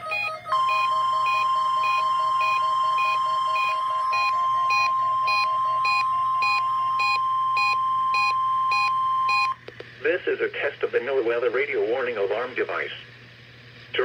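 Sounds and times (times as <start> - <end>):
receiver alarm beeps: 0.0 - 9.6
steady warning alarm tone: 0.0 - 9.6.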